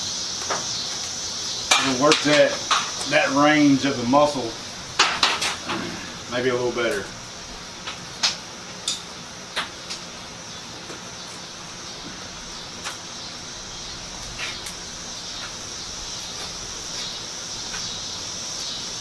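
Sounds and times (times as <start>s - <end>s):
insects chorus: 0.0s - 19.0s.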